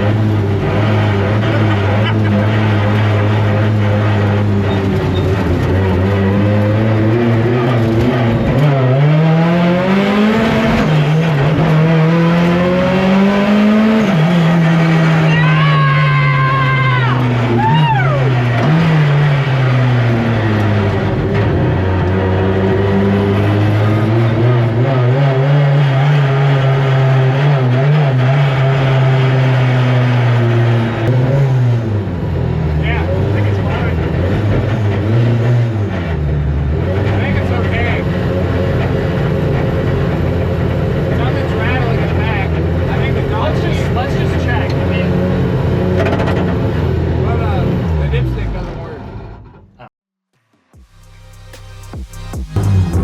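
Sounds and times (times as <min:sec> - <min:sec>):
race car engine accelerating: 0:00.0 - 0:49.8, 0:50.6 - 0:53.0.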